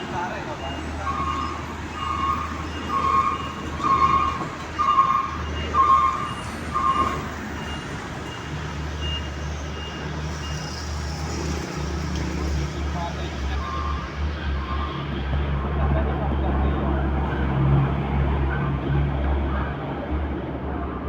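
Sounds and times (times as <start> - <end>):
vehicle reversing alarm beeping: 0.0 - 15.2.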